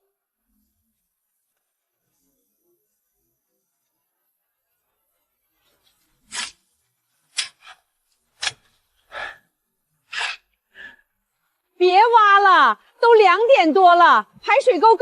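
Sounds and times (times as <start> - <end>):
shovel digging into earth: 6.3 - 6.7, 7.3 - 7.8, 8.4 - 8.7.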